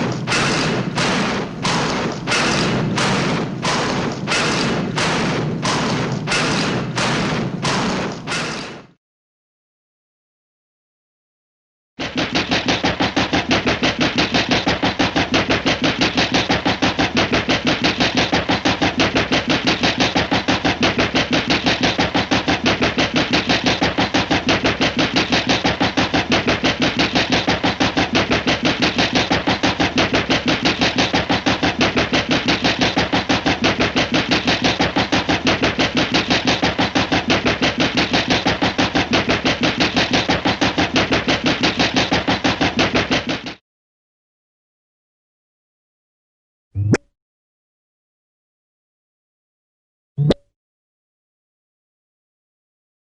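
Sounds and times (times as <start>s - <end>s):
loud mechanical pulsing: 0.0s - 8.9s, 12.1s - 43.6s.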